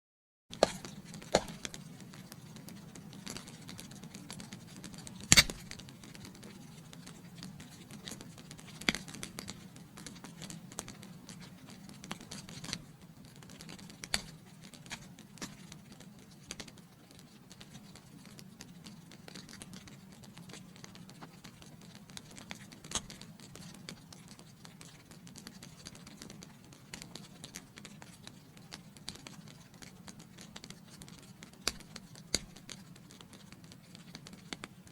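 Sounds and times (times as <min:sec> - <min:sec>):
wood fire crackling: 0:00.6 - 0:23.9.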